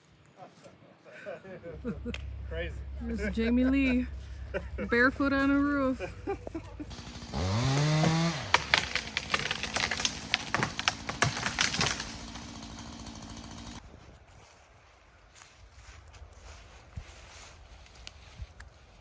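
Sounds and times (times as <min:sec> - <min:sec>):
chainsaw engine revving: 0:06.9 - 0:13.8
sharp cracks and snaps: 0:07.5 - 0:13.8.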